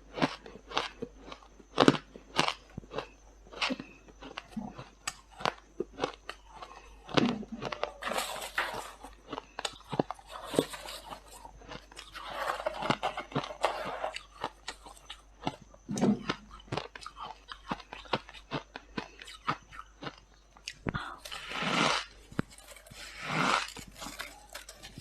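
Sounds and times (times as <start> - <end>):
frost crunching while chewed: 0.1 - 25.0.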